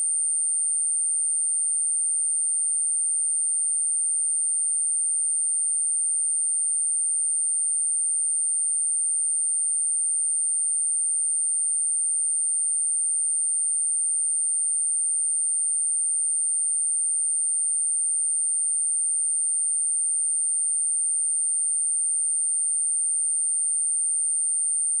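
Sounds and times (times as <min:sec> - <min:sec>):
high-pitched sine-wave test tone: 0:09.5 - 0:25.0.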